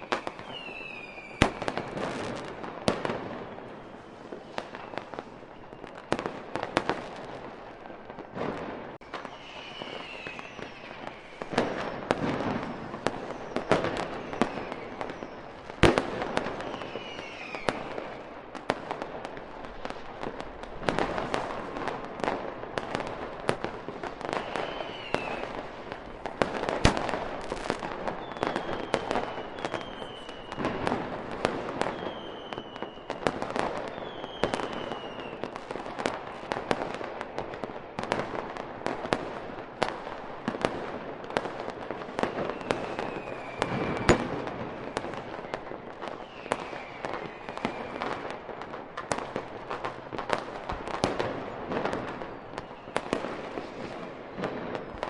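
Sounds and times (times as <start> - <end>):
high falling whistles: 0.0 - 1.8, 9.0 - 15.5, 16.5 - 17.8, 24.3 - 25.5, 28.1 - 30.7, 31.9 - 33.2, 33.9 - 35.4, 42.4 - 44.3, 46.2 - 48.0
fireworks bangs and crackling: 0.0 - 55.0.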